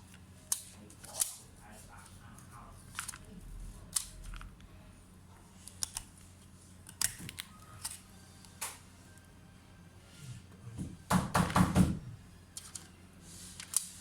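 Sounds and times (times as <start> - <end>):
low steady hum: 0.0 - 11.1.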